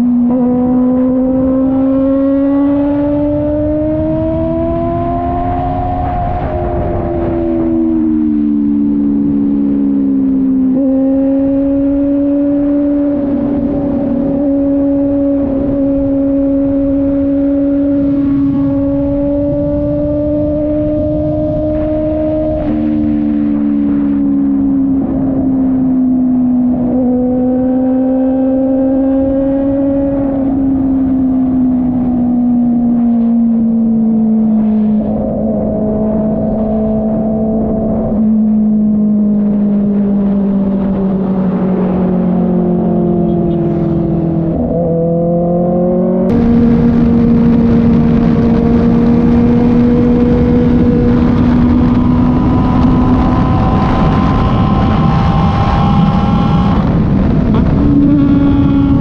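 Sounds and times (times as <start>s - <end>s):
motorcycle engine running: 33.5s - 59.0s.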